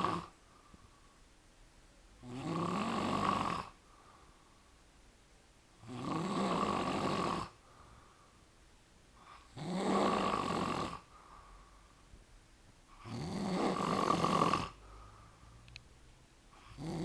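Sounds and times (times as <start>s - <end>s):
man snoring loudly: 0.0s - 0.3s, 2.2s - 3.8s, 5.8s - 7.6s, 9.5s - 11.1s, 13.0s - 14.8s, 16.7s - 17.0s.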